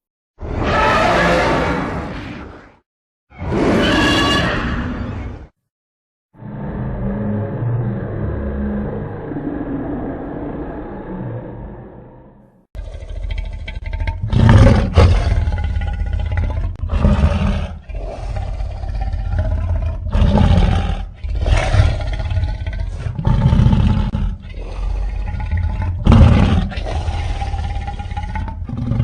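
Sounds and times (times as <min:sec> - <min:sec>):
monster roars: 0:06.4 - 0:29.0.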